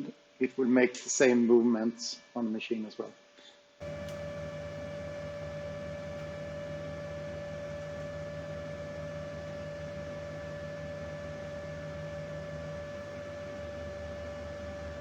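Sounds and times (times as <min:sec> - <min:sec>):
low hum: 0:03.8 - 0:15.0.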